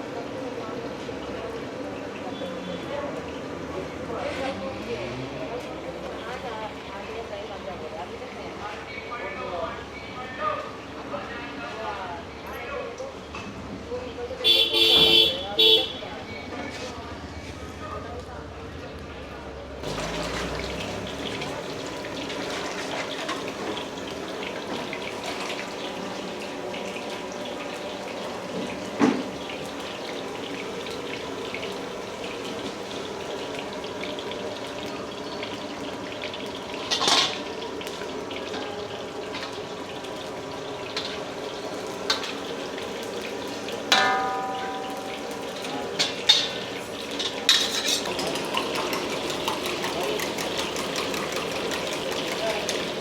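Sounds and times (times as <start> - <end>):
hiss of frying in a wok: 19.8 - 53.0
ladle clanking against wok: 27.8 - 53.0.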